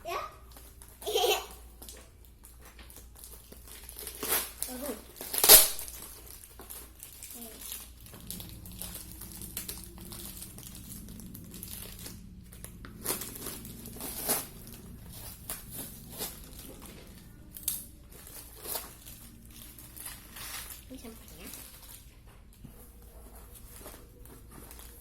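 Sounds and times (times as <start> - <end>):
packaging crinkling: 0.5 - 25.0
packaging ripping: 1.8 - 22.1.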